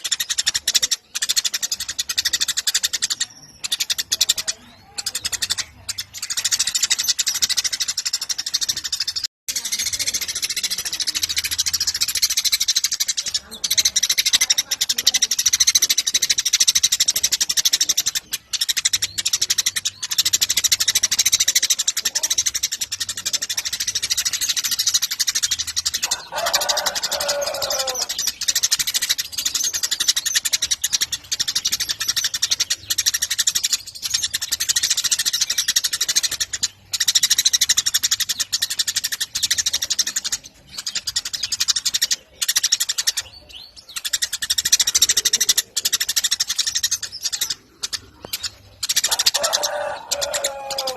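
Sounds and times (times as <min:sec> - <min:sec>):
sparrows chirping: 0:00.0 - 0:50.9.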